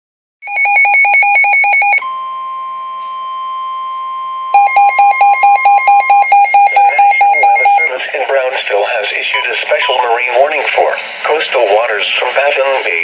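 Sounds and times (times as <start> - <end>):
steady high alarm tone: 0.4 - 8.0
fast electronic beeping: 4.6 - 8.0, 9.3 - 10.1.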